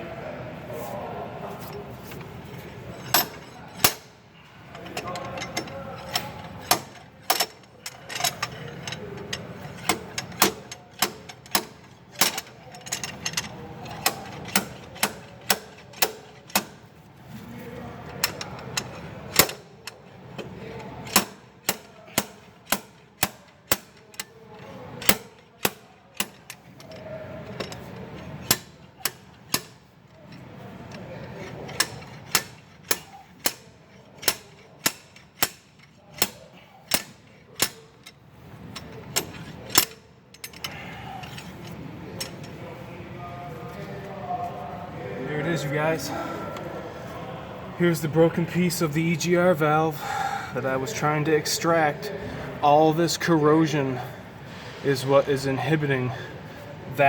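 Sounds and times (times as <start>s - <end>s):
slide hammer clacking metal on metal: 2.9s - 16.9s, 17.9s - 42.6s.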